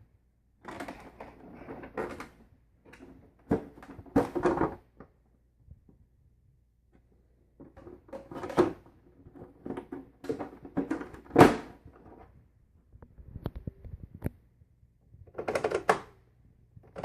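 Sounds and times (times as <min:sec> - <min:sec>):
hard objects knocking and rattling: 0:00.6 - 0:05.2, 0:07.5 - 0:12.4.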